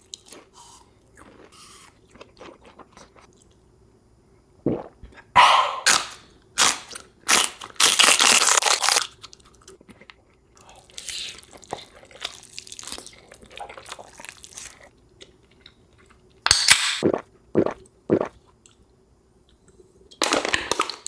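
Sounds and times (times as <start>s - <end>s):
crunchy bites: 5.4s - 9.6s.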